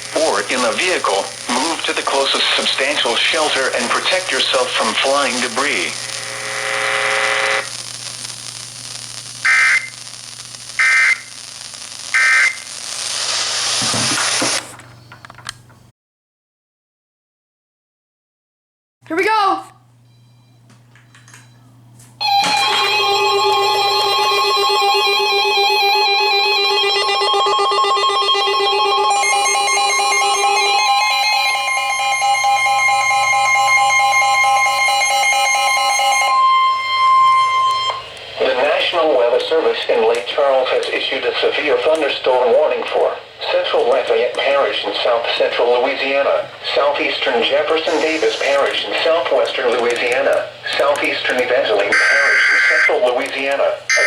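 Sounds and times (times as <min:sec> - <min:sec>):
radio static hiss: 0:00.0 - 0:14.8, 0:37.9 - 0:54.0
data tone bursts: 0:09.4 - 0:10.1, 0:10.8 - 0:11.4, 0:12.1 - 0:12.8, 0:22.2 - 0:38.6, 0:51.9 - 0:53.0
steady single tone: 0:29.1 - 0:38.2.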